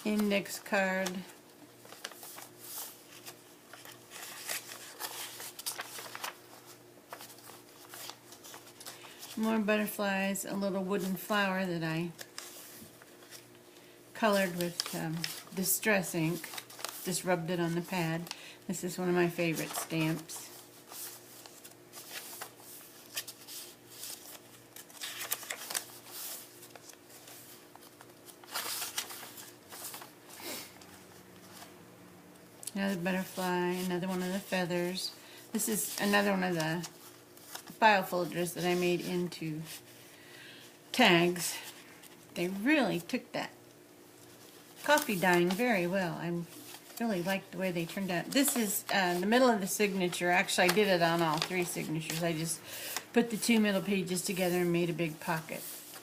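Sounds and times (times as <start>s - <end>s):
paper pages rustling: 0.0s - 9.5s, 12.0s - 13.6s, 14.3s - 31.7s, 35.6s - 40.0s, 44.2s - 56.0s
faint steady hum: 0.0s - 56.0s.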